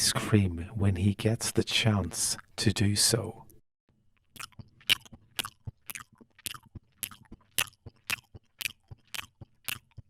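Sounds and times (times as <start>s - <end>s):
crunchy chewing: 4.2s - 10.0s.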